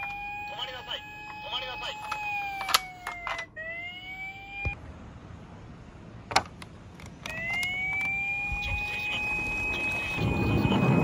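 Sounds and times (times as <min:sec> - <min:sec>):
toy siren steady tone: 0:00.0 - 0:04.8, 0:07.3 - 0:11.0.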